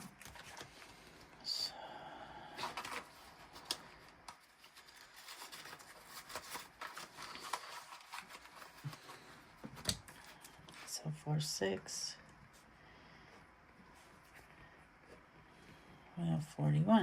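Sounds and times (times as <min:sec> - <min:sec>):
paper banknotes rustling: 0:02.6 - 0:10.5.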